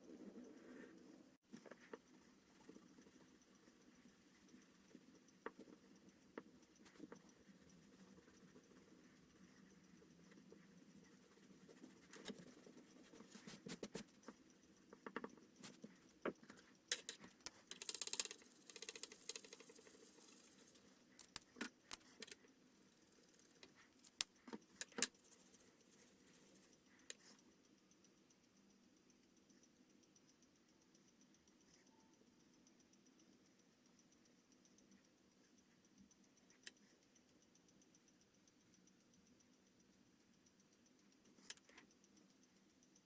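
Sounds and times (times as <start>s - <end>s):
pen scratching on paper: 2.6s - 14.4s
light clicks and taps: 9.4s - 22.6s, 40.4s - 43.0s.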